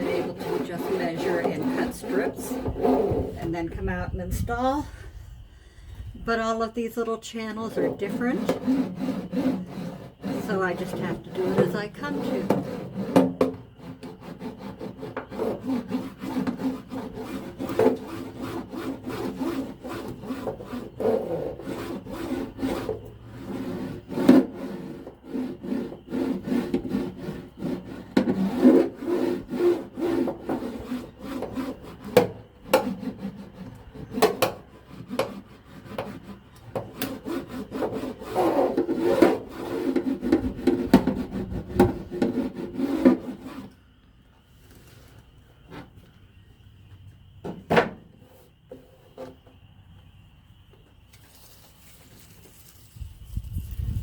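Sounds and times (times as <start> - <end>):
mat rubbing on metal floor: 0.0 - 4.5, 7.6 - 43.7.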